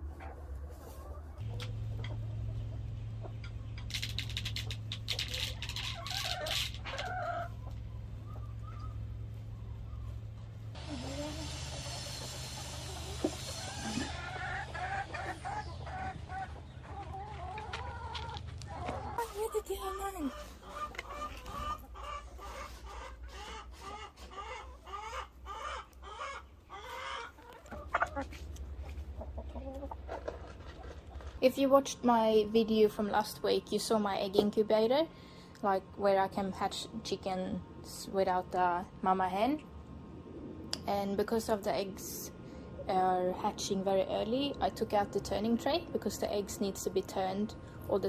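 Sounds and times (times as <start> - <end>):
hen clucking: 0.0 - 31.4
steady low hum: 1.3 - 5.3, 6.7 - 19.2.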